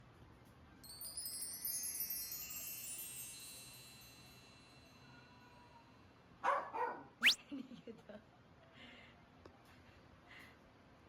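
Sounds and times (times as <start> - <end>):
high metallic chimes ringing: 0.8 - 5.6.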